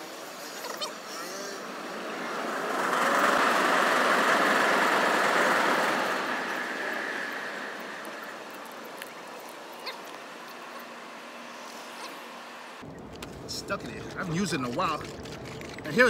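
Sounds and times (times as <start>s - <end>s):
vehicle driving past: 1.0s - 9.6s.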